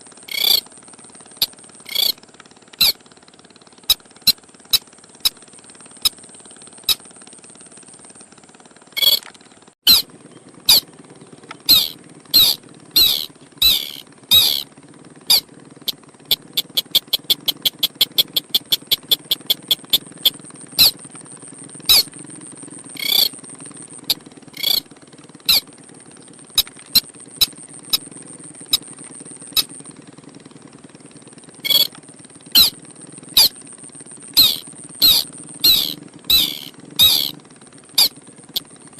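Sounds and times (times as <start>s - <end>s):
crake calling in squeaky notes: 0.3s - 0.6s, 1.4s - 2.2s, 9.0s - 9.3s, 9.9s - 10.1s, 11.6s - 14.6s, 16.3s - 21.0s, 21.9s - 22.1s, 23.0s - 23.3s, 24.6s - 24.8s, 31.6s - 31.9s, 32.6s - 32.8s, 33.4s - 33.6s, 34.4s - 37.4s.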